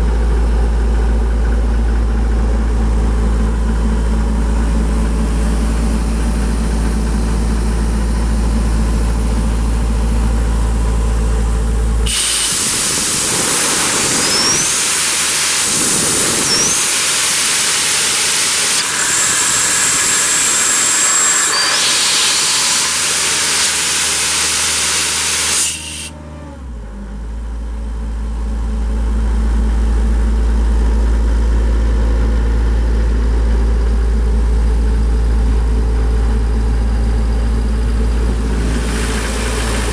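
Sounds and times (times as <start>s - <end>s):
diesel engine running: 0.0s - 39.9s
compressed air hissing: 12.0s - 26.1s, 38.3s - 39.9s.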